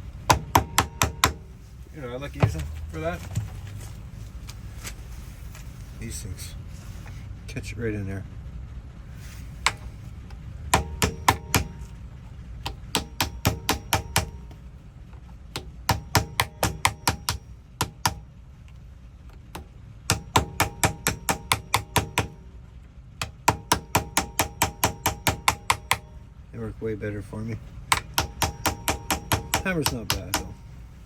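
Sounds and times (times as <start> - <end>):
small hammer tapping on metal: 0.3 - 1.4, 9.6 - 9.9, 10.7 - 11.9, 12.6 - 14.6, 15.5 - 18.2, 19.5 - 22.4, 23.2 - 26.1, 27.9 - 30.7.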